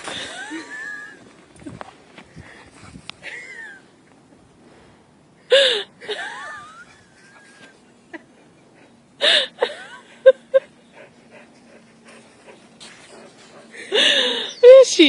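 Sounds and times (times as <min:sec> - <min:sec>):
dogs whining: 0:12.4 - 0:14.9.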